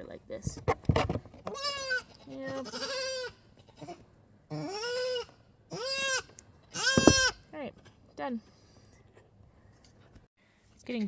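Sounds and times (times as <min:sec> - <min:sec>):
goat kid bleating: 0:01.5 - 0:07.4.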